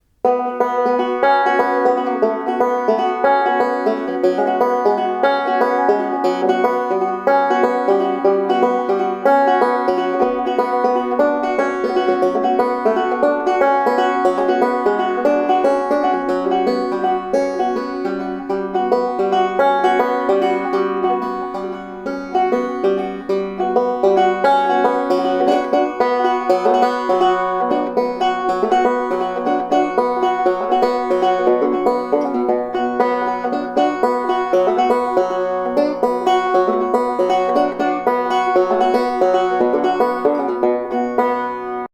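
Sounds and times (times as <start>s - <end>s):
banjo playing slow tune: 0.0s - 41.9s.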